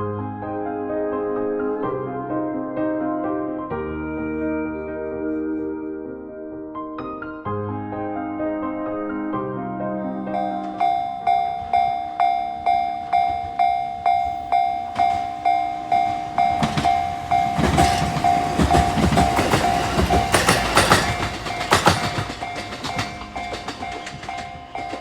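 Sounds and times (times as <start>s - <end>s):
train passing: 9.9s - 25.0s
level-crossing alarm bell: 10.2s - 25.0s
train wheels clicking on rails: 10.3s - 25.0s.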